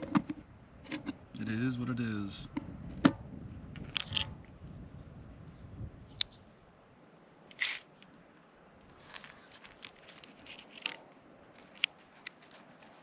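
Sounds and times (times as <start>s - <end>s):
rustling: 8.8s - 13.0s
small taps and crinkles: 8.8s - 13.0s.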